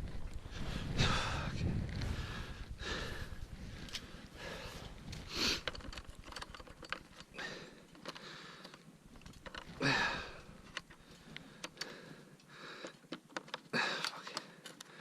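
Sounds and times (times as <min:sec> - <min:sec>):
person breathing heavily: 0:00.5 - 0:05.7, 0:07.3 - 0:08.9, 0:09.7 - 0:13.1, 0:13.7 - 0:15.0
clicks and taps of parts: 0:10.7 - 0:15.0.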